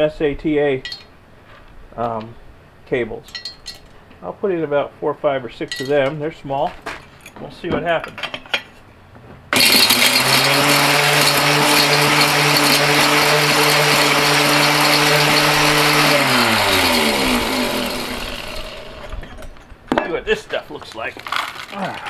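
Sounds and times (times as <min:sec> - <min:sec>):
ore crusher running: 0:09.5 - 0:19.7, 0:21.2 - 0:22.0.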